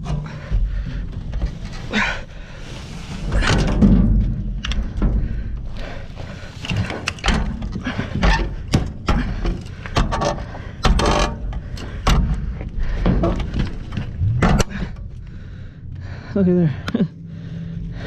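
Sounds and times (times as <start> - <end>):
low rumble: 11.9 - 18.0.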